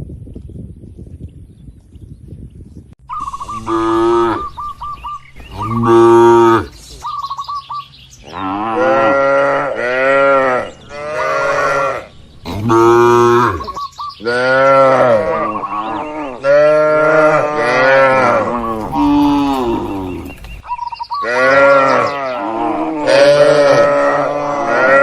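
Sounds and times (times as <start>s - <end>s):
short chirping trills: 3.1s - 6.0s
cattle mooing: 3.5s - 4.6s, 5.5s - 6.7s, 8.2s - 20.4s, 21.2s - 25.0s.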